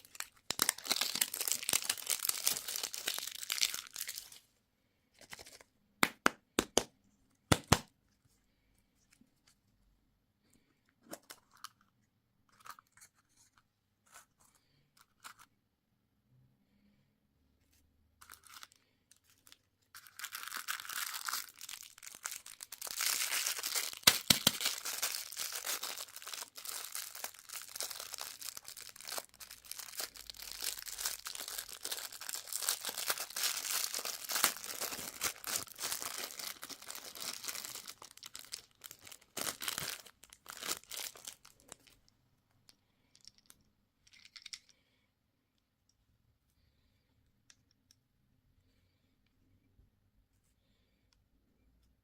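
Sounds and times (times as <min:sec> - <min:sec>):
candy wrapper crinkling: 0:00.0 - 0:04.4, 0:18.2 - 0:42.1.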